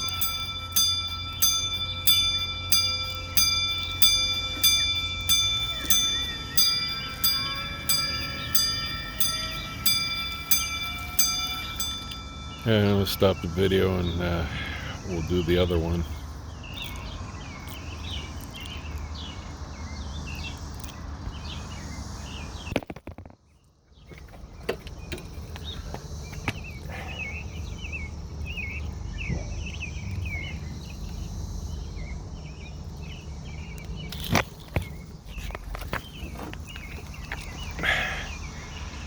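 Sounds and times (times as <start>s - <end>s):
steady low hum: 0.0s - 17.8s
small chirps: 0.0s - 19.7s.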